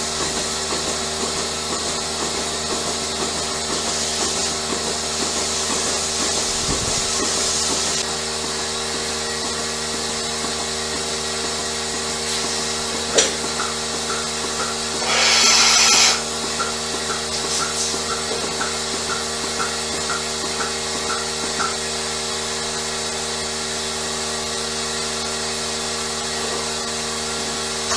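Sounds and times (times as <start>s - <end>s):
machinery humming: 10.9s - 22.8s
loud burst of hissing: 14.9s - 16.3s.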